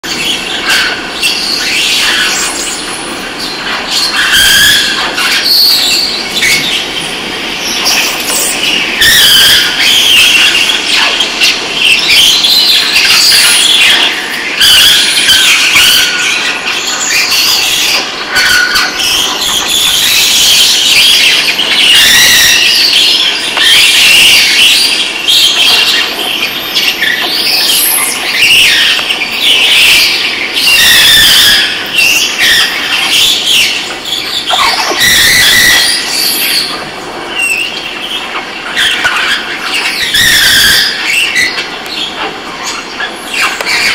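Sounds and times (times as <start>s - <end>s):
steel rail squealing: 0.1s - 43.9s.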